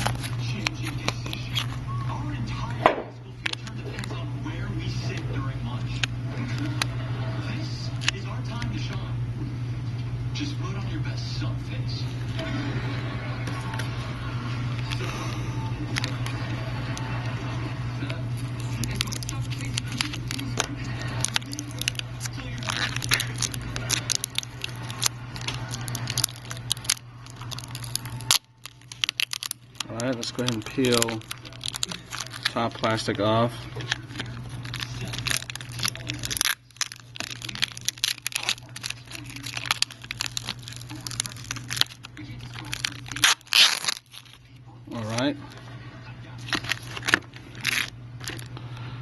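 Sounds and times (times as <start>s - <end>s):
plastic film peeling and crinkling: 0.0s - 1.8s, 2.5s - 4.2s, 18.0s - 45.2s, 46.4s - 48.5s
steady low hum: 0.0s - 49.0s.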